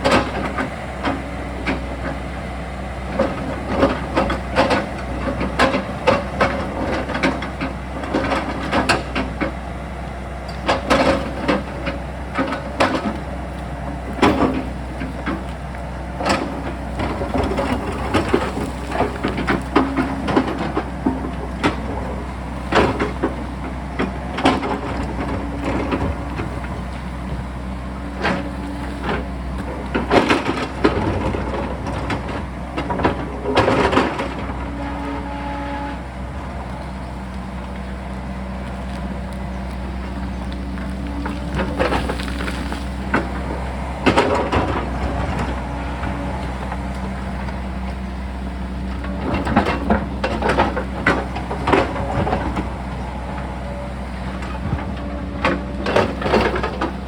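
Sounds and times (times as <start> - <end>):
excavator diesel engine running: 0.0 - 57.0
bucket clanking and crunching rock: 10.5 - 35.7, 38.9 - 57.0.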